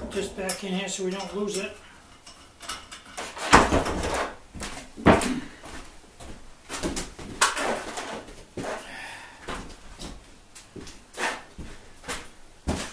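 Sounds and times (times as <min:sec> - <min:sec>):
knocks of parts and tools: 0:02.2 - 0:05.4.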